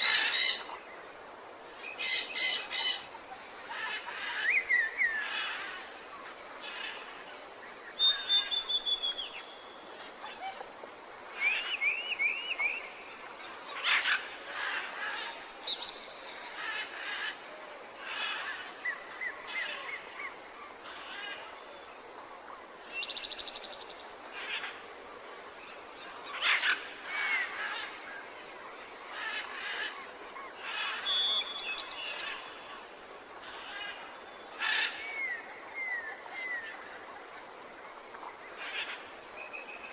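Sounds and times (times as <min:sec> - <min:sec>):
birds chirping and trilling: 0:00.0 - 0:01.0, 0:01.8 - 0:10.6, 0:29.1 - 0:36.9.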